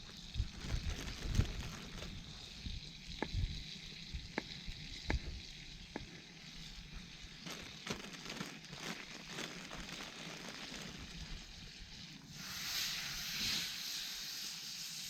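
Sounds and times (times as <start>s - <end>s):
food sizzling in a pan: 0.0s - 7.9s, 10.0s - 15.0s
sharp pops and crackles: 0.0s - 11.6s.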